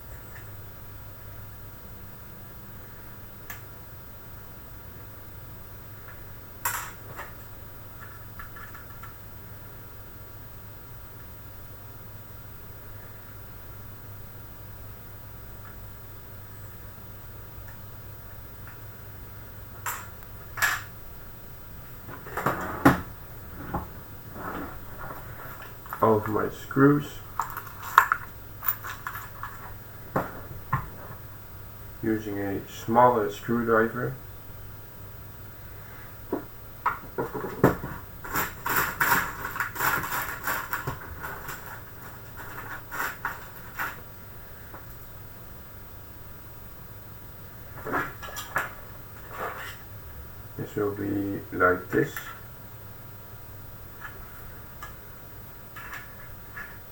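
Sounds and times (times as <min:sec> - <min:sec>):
metal screws clinking: 0:27.4 - 0:29.8
screwdriver scratching and clicking: 0:38.3 - 0:44.0.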